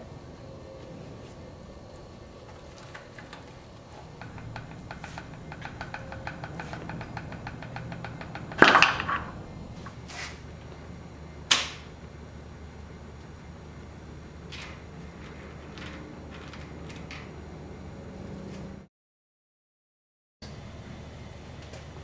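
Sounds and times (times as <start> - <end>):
loud sharp cracks: 11.5 - 11.9.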